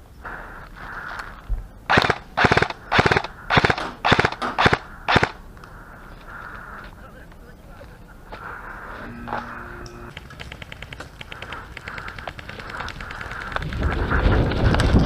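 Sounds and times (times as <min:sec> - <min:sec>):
airsoft gun full-auto bursts: 0:01.9 - 0:05.4.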